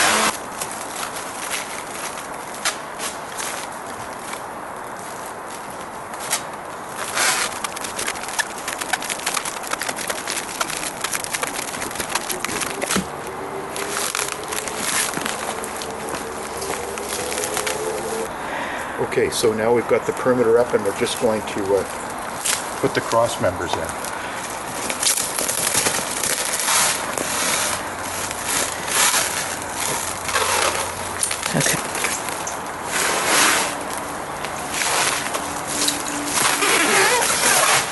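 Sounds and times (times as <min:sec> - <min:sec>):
plastic stretch wrap crinkling: 0:00.0 - 0:18.4, 0:20.8 - 0:37.9
steady hum: 0:08.5 - 0:19.3.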